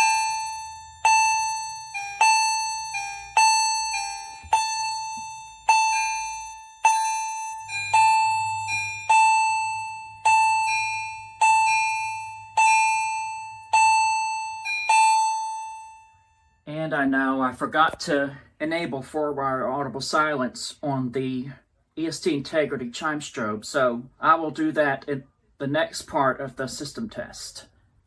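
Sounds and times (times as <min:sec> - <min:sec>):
fire alarm electronic chime: 0:00.0 - 0:16.7.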